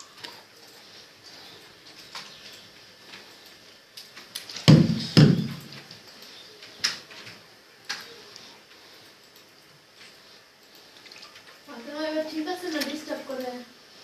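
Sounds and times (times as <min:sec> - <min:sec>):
sharp knock: 0:04.7 - 0:05.6
loud thumps: 0:04.7 - 0:05.8.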